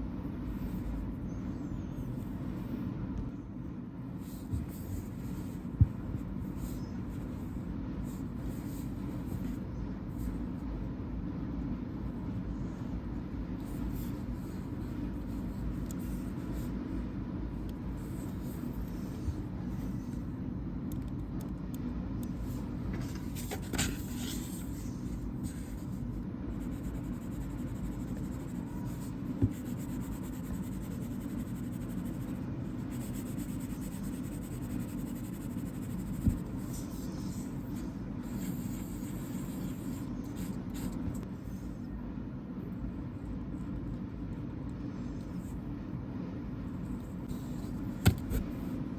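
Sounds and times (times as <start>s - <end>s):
steady low hum: 0.0s - 48.9s
pencil scratching on paper: 26.6s - 41.0s.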